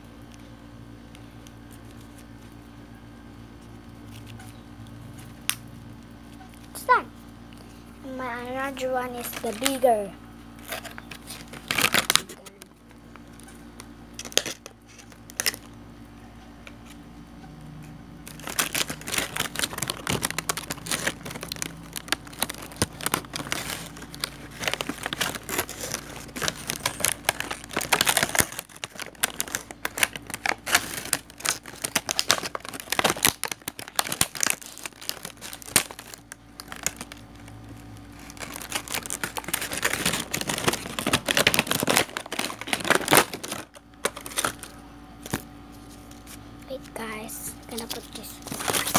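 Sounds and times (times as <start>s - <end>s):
packaging crinkling and rustling: 1.1s - 2.8s, 8.4s - 15.8s, 18.2s - 47.0s, 47.6s - 48.9s.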